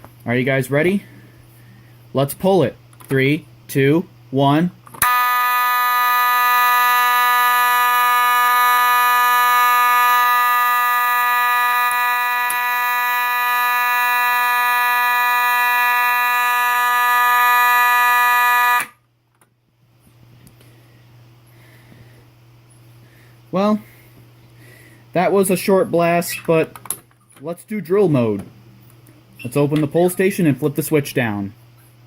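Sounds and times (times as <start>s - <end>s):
fire alarm horn buzzing: 5.0s - 19.0s.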